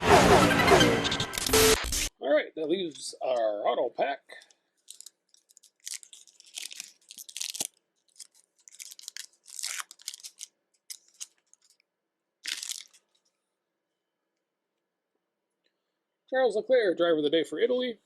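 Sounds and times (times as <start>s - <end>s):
foil wrapper being torn open: 4.8s - 11.8s, 12.4s - 13.3s.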